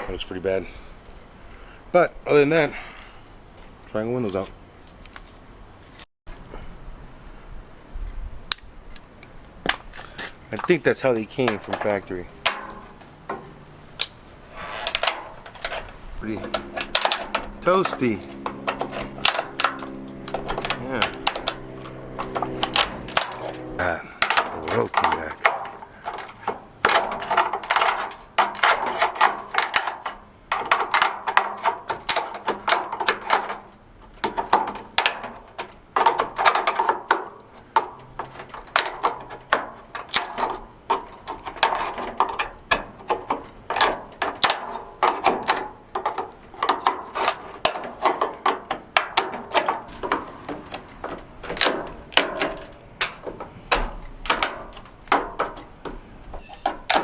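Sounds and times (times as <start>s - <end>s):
metallic clicks and knocks: 10.5s - 57.0s
short metal scrapes: 14.4s - 24.9s.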